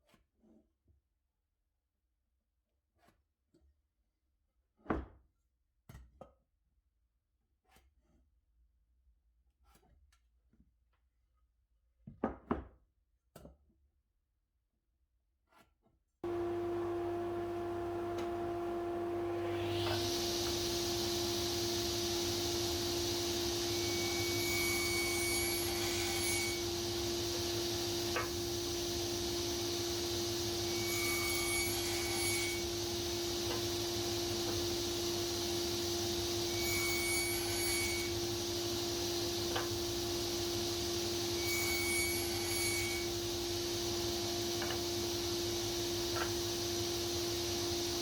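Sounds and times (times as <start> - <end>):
high tool whine: 16.2 - 48.0
power tool motor hum: 16.2 - 48.0.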